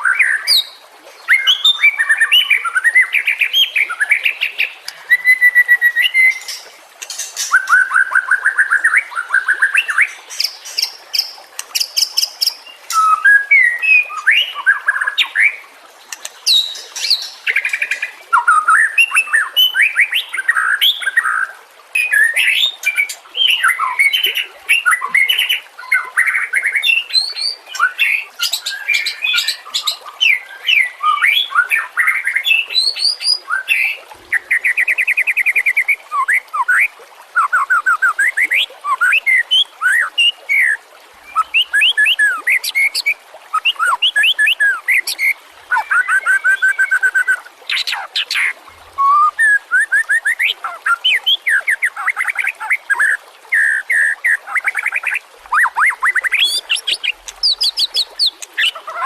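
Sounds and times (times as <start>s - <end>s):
bird singing whistled phrases: 5.1s - 6.6s, 12.9s - 15.5s, 36.1s - 59.0s.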